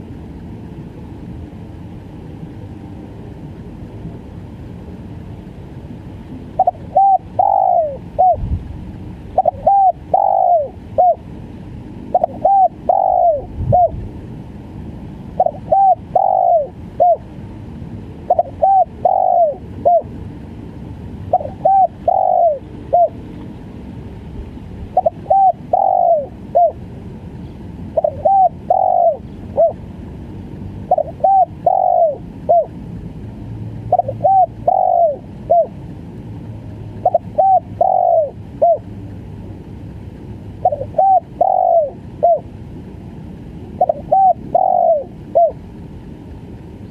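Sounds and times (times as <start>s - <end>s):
dove cooing: 6.4s - 8.5s, 9.3s - 11.3s, 12.1s - 14.0s, 15.3s - 17.3s, 18.3s - 20.2s, 21.3s - 23.2s, 24.9s - 26.9s, 27.9s - 29.8s, 30.9s - 32.8s, 33.9s - 35.8s, 37.0s - 38.9s, 40.6s - 42.5s, 43.8s - 45.7s.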